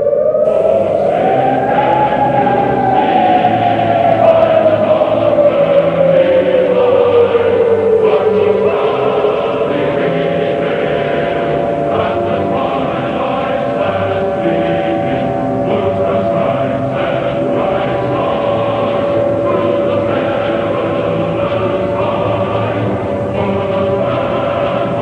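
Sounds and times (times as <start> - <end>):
siren winding down: 0.4 - 8.6
choir singing: 0.4 - 25.0.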